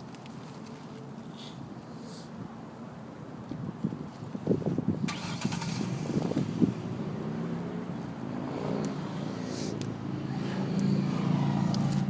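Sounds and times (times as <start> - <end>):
vehicle engine humming: 4.6 - 12.0.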